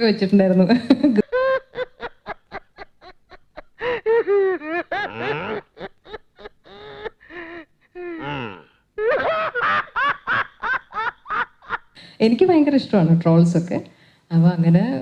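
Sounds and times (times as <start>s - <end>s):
woman laughing: 0.6s - 11.9s.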